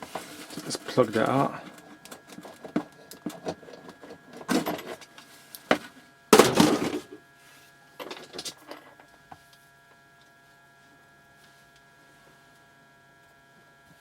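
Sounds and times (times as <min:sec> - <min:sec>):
rustling clatter: 0:00.0 - 0:07.2, 0:08.0 - 0:09.0
faint electrical hum: 0:00.0 - 0:14.0.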